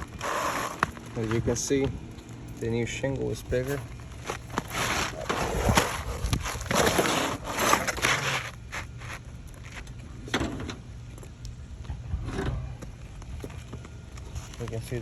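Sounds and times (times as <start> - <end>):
shingle scraping on roof: 0.0 - 1.5, 3.5 - 9.2.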